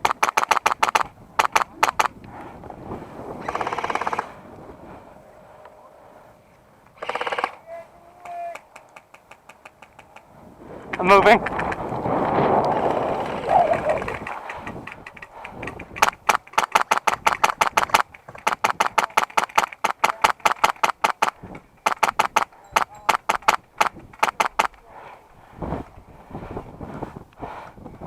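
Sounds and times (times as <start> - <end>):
airsoft rifle rapid shots: 0.0 - 2.1, 3.4 - 4.3, 7.0 - 7.6, 14.2 - 24.8.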